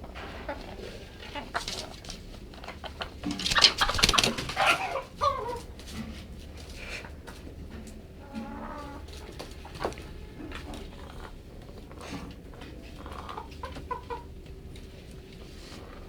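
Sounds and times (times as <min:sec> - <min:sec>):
chicken squawking: 0:02.7 - 0:05.7.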